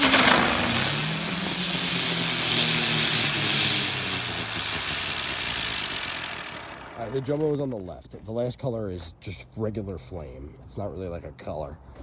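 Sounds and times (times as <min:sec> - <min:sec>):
spinner fireworks hissing: 0:00.0 - 0:07.7.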